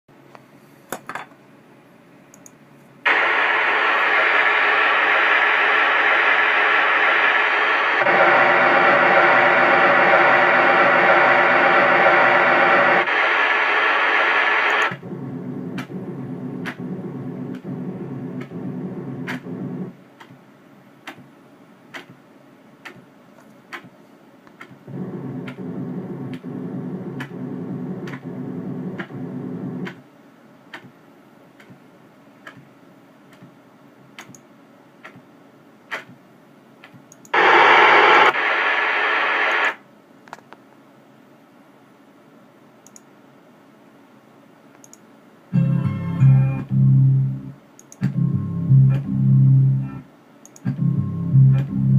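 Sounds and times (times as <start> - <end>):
sharp clicks: 21.9 - 22.2, 42.8 - 43.1, 44.8 - 45.0, 50.4 - 50.8
electronic buzz and static: 37.4 - 39.8.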